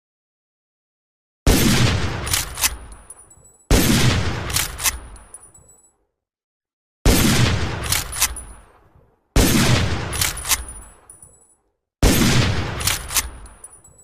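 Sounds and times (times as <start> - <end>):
rifle shots echoing: 1.5 - 3.0, 3.7 - 5.2, 7.1 - 8.8, 9.4 - 11.1, 12.0 - 13.7
rifle lever clicks: 2.3 - 3.2, 4.5 - 5.8, 7.8 - 8.5, 10.1 - 11.4, 12.8 - 13.8.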